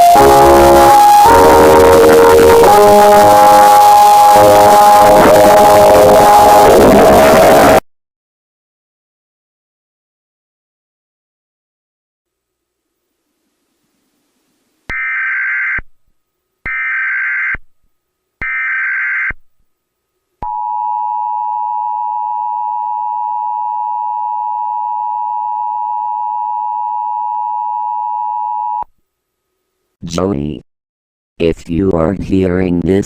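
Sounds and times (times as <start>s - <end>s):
digital header bursts: 0.0s - 7.8s
two-tone attention signal: 0.0s - 7.8s.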